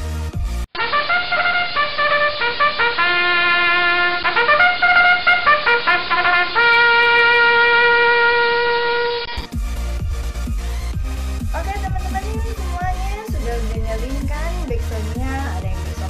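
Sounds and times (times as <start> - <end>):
solo brass melody: 0.8 - 9.4.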